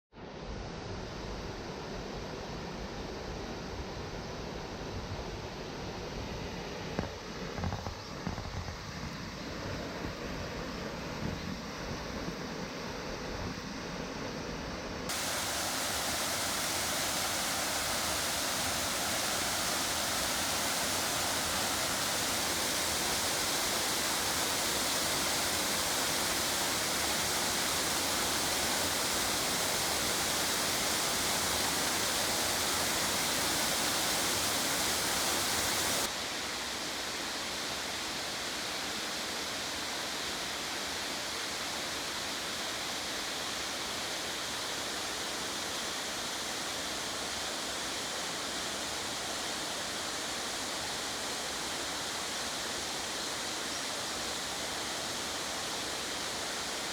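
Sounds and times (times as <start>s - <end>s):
waterfall rushing: 15.1s - 56.9s.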